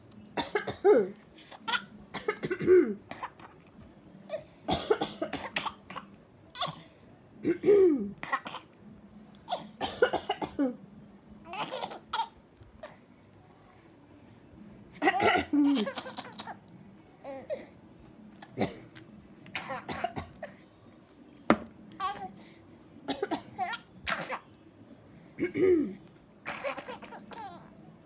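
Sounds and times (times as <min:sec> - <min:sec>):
elderly woman coughing: 0:00.4 - 0:01.2, 0:02.1 - 0:03.4, 0:04.7 - 0:06.1, 0:06.7 - 0:08.7, 0:09.6 - 0:10.8, 0:15.0 - 0:16.6, 0:18.6 - 0:19.0, 0:19.6 - 0:20.6, 0:25.4 - 0:27.4
baby laughing: 0:11.5 - 0:12.4, 0:15.0 - 0:16.6, 0:26.5 - 0:27.8.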